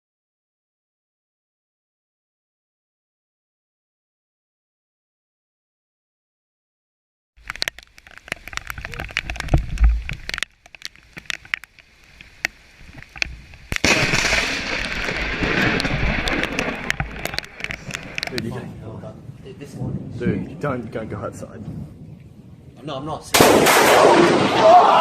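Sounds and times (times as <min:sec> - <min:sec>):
thunder crackling and rumbling: 0:07.4 - 0:11.6, 0:12.8 - 0:25.0
sharp thunder crack: 0:13.7 - 0:25.0.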